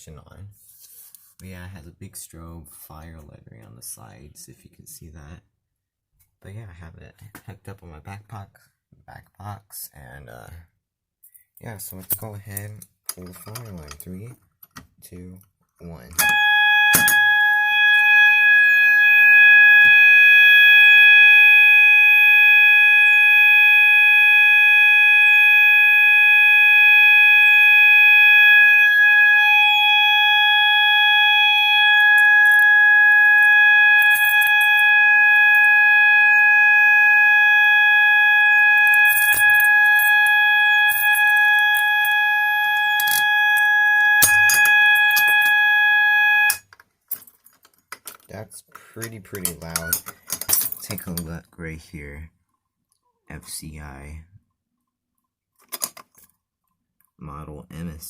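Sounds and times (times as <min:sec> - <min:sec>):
fire alarm continuous tone: 0:16.1 - 0:47.2, 0:49.0 - 0:51.1
clicks and rattles: 0:46.6 - 0:51.3, 0:55.6 - 0:56.4.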